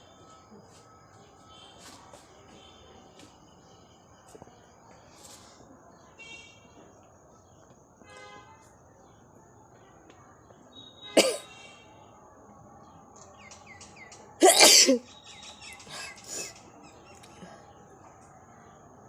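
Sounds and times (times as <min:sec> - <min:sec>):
faint bird chirps: 0:09.0 - 0:12.0, 0:13.1 - 0:18.8.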